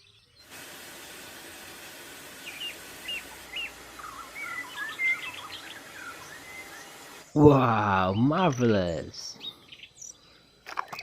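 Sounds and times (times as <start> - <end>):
small birds chirping: 0.0 - 0.5, 2.2 - 11.0
steady hiss: 0.0 - 7.5.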